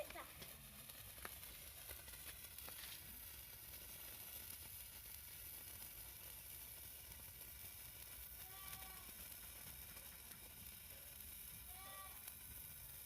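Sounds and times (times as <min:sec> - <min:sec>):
firework fizzing: 0:00.0 - 0:13.0
light crackles: 0:00.0 - 0:13.0.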